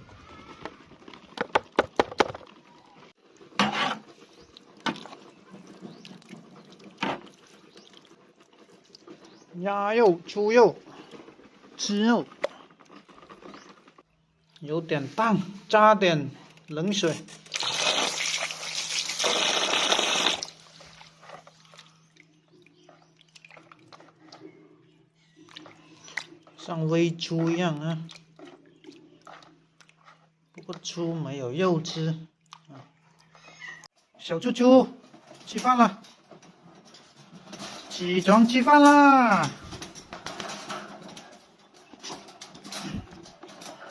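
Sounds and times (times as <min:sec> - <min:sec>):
scraping rustle: 0:02.6 - 0:09.6, 0:10.2 - 0:14.2, 0:35.0 - 0:43.9
water pouring into a pot: 0:17.4 - 0:21.0.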